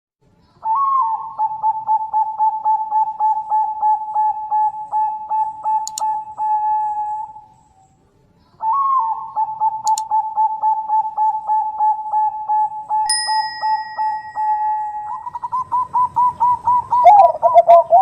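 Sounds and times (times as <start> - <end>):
dove cooing: 0.6 - 7.8, 8.6 - 18.0
bell-like ding: 13.1 - 15.0.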